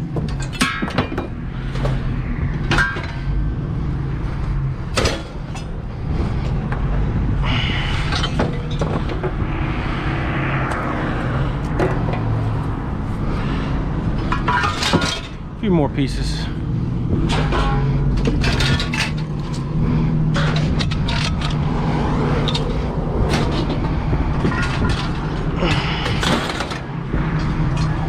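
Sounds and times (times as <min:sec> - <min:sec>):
scrap metal knocks and clanks: 0:00.0 - 0:07.1, 0:08.0 - 0:12.8, 0:14.0 - 0:15.6, 0:16.2 - 0:28.0
engine running: 0:00.0 - 0:28.0.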